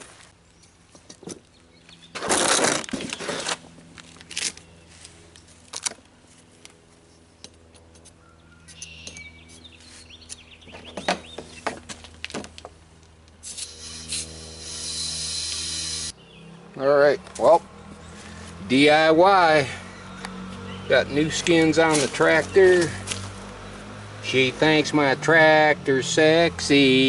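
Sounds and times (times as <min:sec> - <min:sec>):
steady low hum: 0:03.2 - 0:21.9
compressed air hissing: 0:13.4 - 0:16.1.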